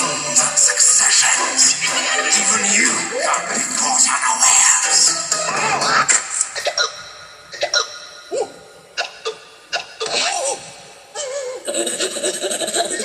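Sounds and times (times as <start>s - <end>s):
faint background music: 0.0s - 7.7s.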